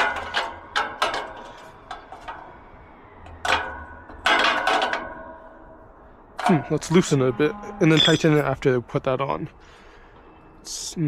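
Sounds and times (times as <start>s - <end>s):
metal lock parts clicking: 0.0s - 8.5s.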